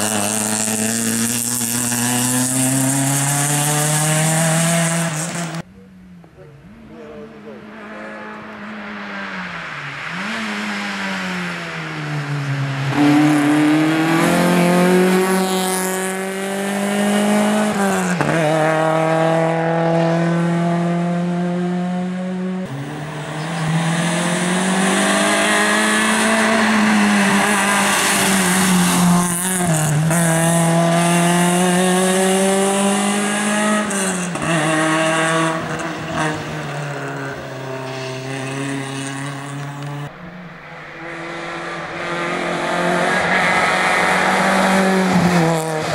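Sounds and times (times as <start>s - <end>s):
rally car engine revving: 0.0s - 5.7s, 6.3s - 45.9s
road and tyre noise: 0.0s - 45.9s.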